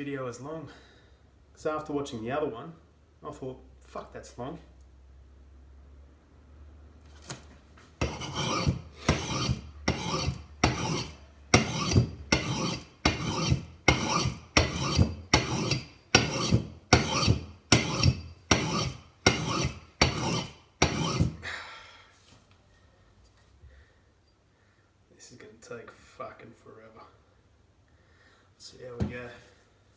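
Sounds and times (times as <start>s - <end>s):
axe scraping on sharpening stone: 8.0s - 21.4s.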